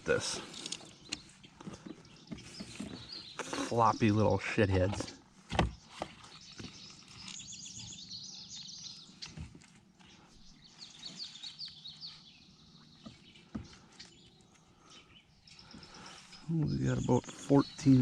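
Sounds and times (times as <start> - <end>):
songbird chirping: 0.0 - 18.0.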